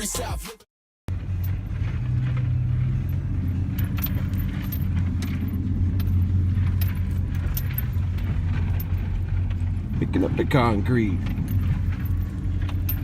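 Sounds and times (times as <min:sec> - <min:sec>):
vehicle engine running: 0:01.1 - 0:13.0
light metallic jingling: 0:01.2 - 0:13.0.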